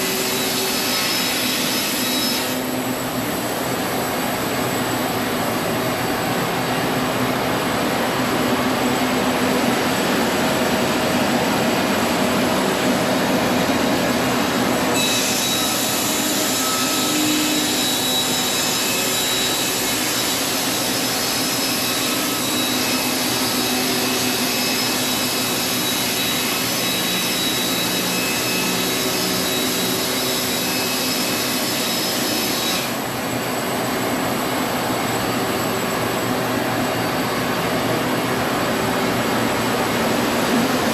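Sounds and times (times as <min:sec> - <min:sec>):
sawmill sawing a beam: 0:00.0 - 0:02.7, 0:12.3 - 0:33.1.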